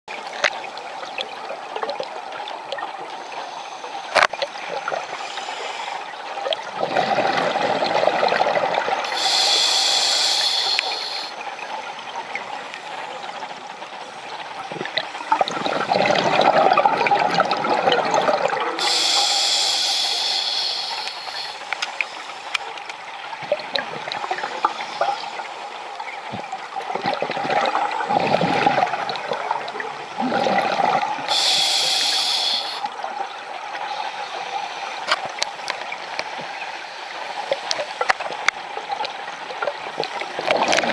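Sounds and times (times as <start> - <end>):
regulator hissing inhale: 5.2 - 6.1, 9.0 - 11.4, 18.8 - 22.7, 31.3 - 32.9
bubbling exhaled air: 6.7 - 11.4, 14.8 - 21.6, 27.0 - 32.9.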